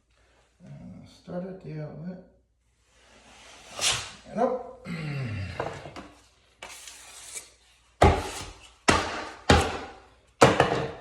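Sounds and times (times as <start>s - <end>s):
taping knife scraping compound: 3.1s - 4.2s, 6.6s - 9.8s.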